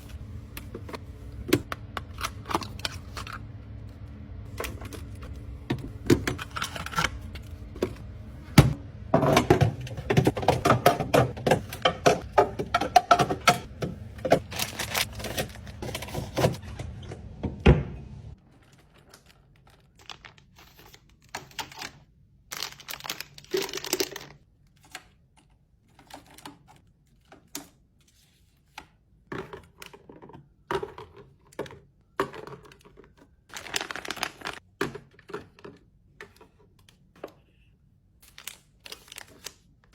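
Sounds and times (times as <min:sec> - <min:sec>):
low hum: 0:00.0 - 0:10.6
containers tapping and clacking: 0:09.2 - 0:15.0.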